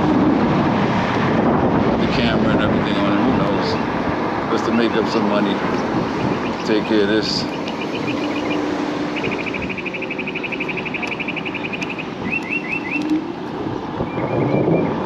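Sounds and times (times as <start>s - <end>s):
wind and road noise: 0.0s - 15.0s
bird chirps: 6.1s - 13.4s
small bird trilling: 6.2s - 13.3s.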